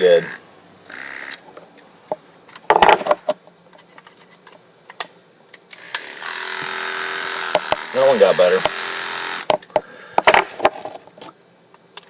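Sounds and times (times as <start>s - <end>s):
electric clipper humming: 0.0s - 1.4s, 5.8s - 9.5s.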